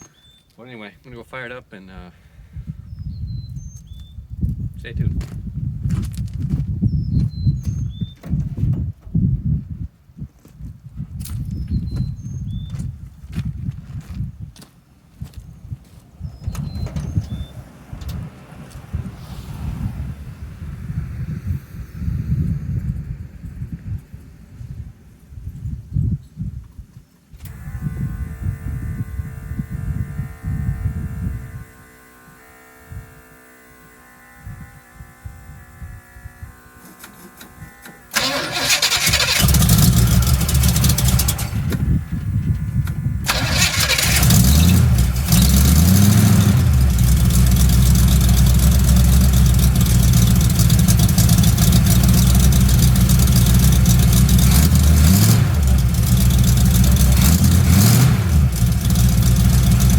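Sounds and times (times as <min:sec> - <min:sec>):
truck engine starting and revving: 0:15.3 - 0:25.4, 0:36.5 - 0:59.9.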